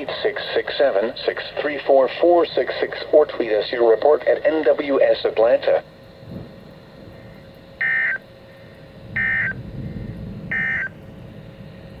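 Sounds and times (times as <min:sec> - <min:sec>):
radio background hiss: 0:00.0 - 0:09.6
buzzy digital data tones: 0:07.8 - 0:08.2, 0:09.0 - 0:11.0.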